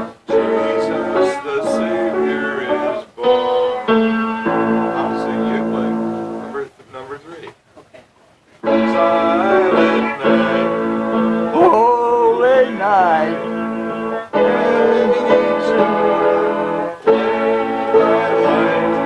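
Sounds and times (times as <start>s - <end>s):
person singing: 11.5s - 13.5s.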